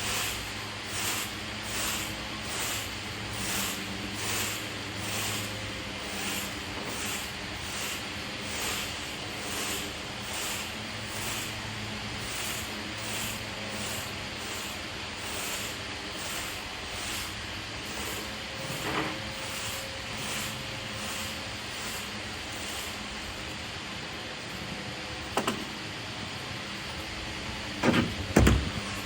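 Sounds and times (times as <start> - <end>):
leaves being raked: 0.0 - 23.1.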